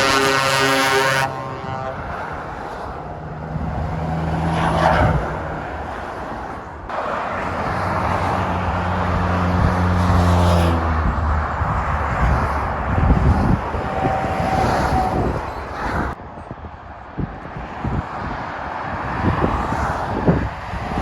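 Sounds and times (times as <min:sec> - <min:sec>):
diesel lorries passing: 0:00.0 - 0:16.2.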